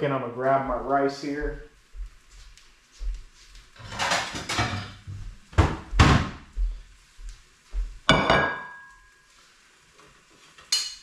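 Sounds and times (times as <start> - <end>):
knocks and scrapes of kitchenware: 3.8 - 6.3.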